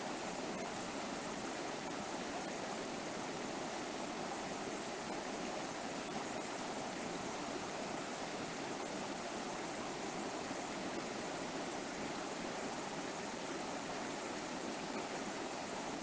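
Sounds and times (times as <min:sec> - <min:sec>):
river water flowing over rocks: 0:00.0 - 0:16.0.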